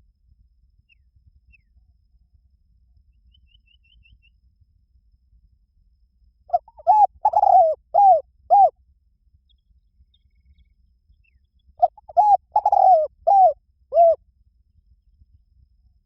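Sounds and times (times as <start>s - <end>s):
small bird chirping: 3.1s - 4.4s, 6.5s - 8.7s, 9.4s - 14.2s
dove cooing: 6.5s - 8.7s, 11.8s - 14.2s.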